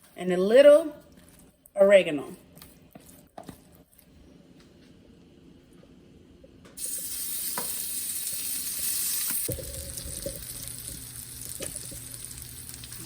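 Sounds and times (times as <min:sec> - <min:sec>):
shrimp sizzling in a pan: 0:06.8 - 0:13.0.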